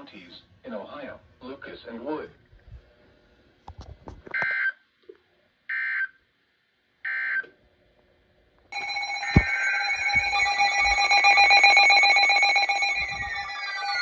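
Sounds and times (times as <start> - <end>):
loud electronic alert tone: 8.8 - 14.0
warbling digital data bursts: 8.8 - 14.0.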